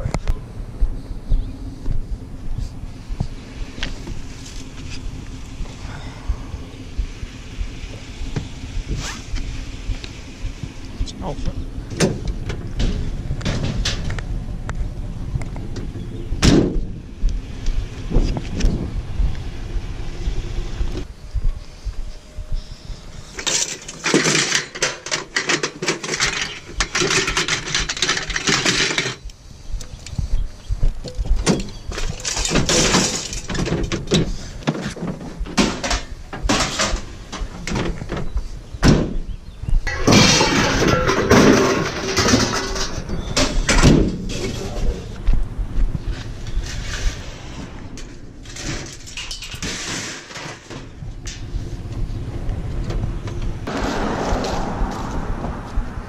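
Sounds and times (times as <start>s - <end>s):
scrap knocking and clattering: 12.0s - 14.3s, 23.4s - 29.3s, 31.0s - 38.4s, 39.9s - 44.8s, 46.1s - 51.5s
items scraping and rustling: 23.2s - 29.3s, 39.9s - 45.1s, 46.0s - 51.8s.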